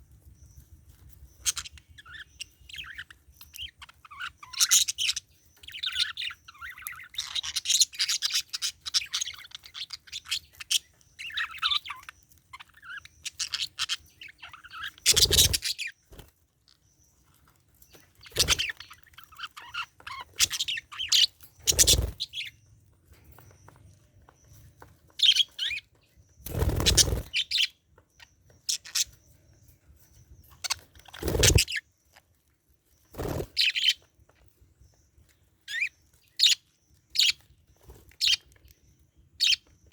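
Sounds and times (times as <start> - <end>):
budgerigar chattering: 14.7 - 15.9.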